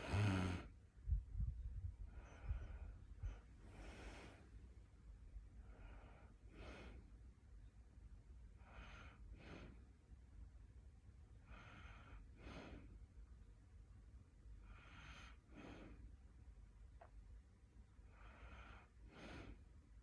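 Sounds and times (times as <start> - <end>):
soft snoring: 0.0 - 0.7.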